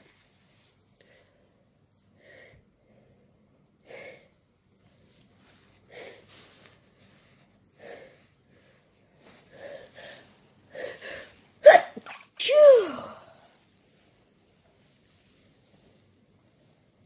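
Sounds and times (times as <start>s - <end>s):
person sneezing: 11.6s - 13.2s.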